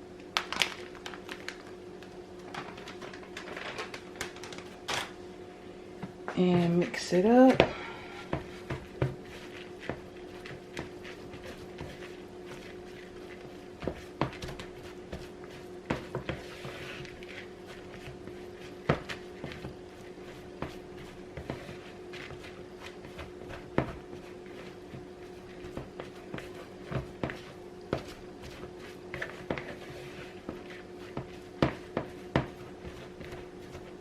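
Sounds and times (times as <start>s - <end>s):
steady hum: 0.0s - 34.0s
spatula scraping a bowl: 14.9s - 18.1s.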